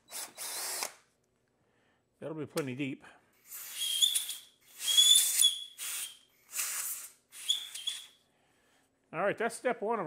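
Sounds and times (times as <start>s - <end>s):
compressed air blow gun blasts: 3.4s - 8.1s.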